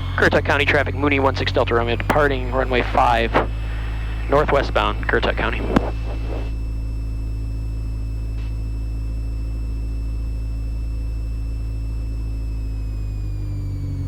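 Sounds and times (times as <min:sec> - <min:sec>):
propeller aircraft engine drone: 0:00.0 - 0:14.0.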